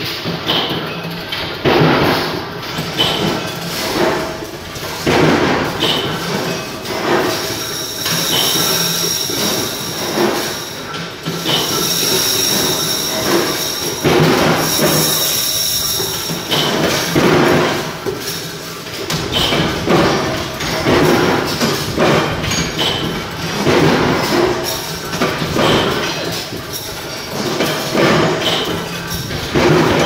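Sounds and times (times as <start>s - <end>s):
wire bending machine clatter: 0.0s - 30.0s
steady high machine whine: 6.1s - 25.2s.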